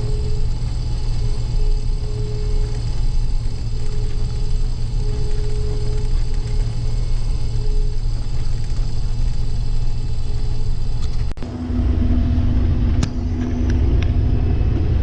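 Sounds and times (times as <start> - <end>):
combine harvester engine hum: 0.0 - 15.0
deep rumble with drone: 0.0 - 15.0.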